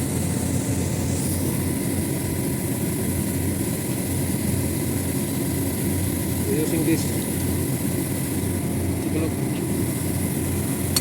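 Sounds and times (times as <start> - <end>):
refrigeration machinery drone: 0.0 - 11.0.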